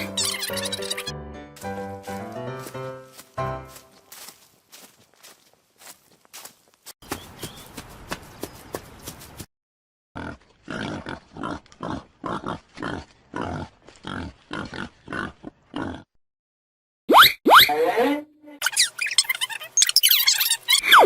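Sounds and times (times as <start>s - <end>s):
animal grunting: 10.2s - 16.2s
rising squeaks: 18.6s - 21.0s.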